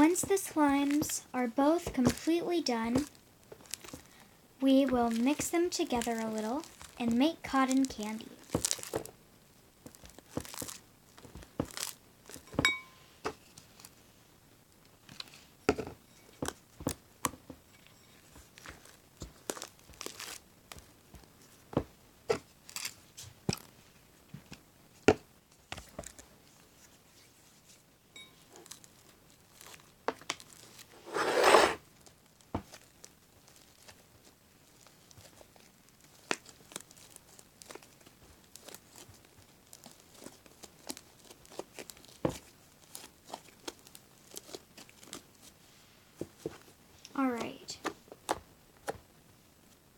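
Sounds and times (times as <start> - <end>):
slime squelch: 0.0 - 9.0
slime crackling and popping: 1.8 - 4.2, 4.9 - 9.2, 9.8 - 12.6, 18.6 - 21.0, 28.6 - 30.9, 32.0 - 45.4.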